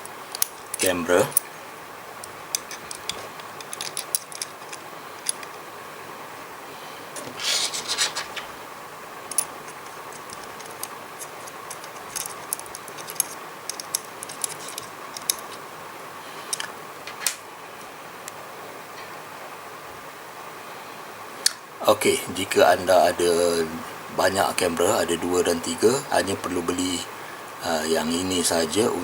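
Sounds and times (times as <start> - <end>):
clicks and scrapes of small parts: 2.2 - 5.5, 9.3 - 15.6, 16.4 - 17.4.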